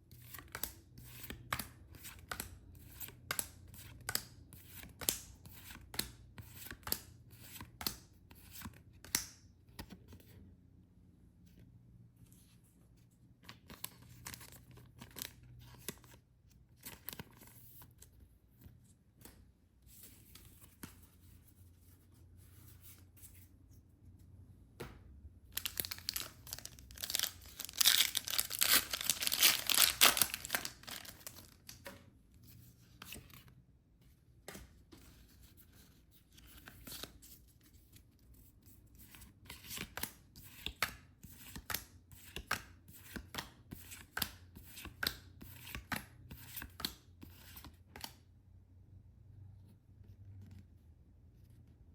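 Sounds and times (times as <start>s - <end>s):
packaging tearing and crinkling: 25.6s - 31.6s.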